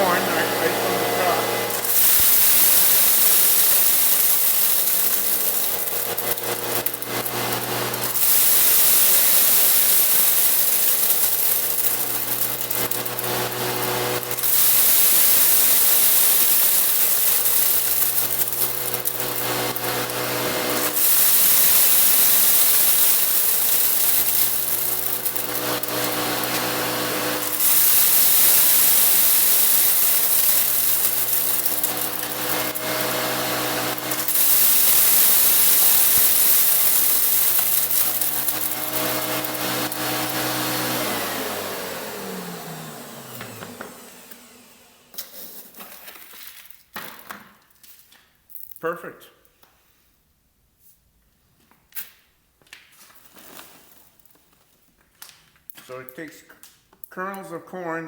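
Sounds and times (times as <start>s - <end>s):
wood chipper motor running: 0.0s - 45.4s
grinding of corn kernels: 0.0s - 47.1s.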